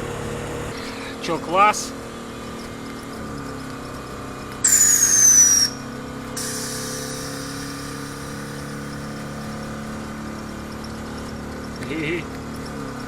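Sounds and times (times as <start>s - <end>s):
engine running: 0.0s - 13.0s
air valve hissing: 4.6s - 10.0s.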